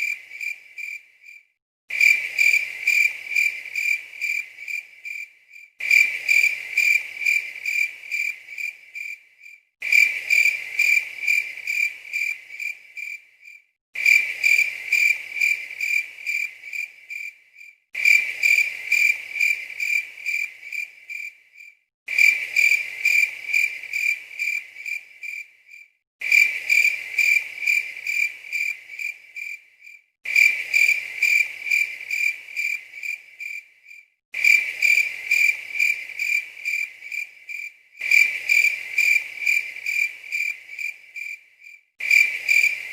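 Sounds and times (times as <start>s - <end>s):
cricket chirping trill: 0.0s - 42.9s.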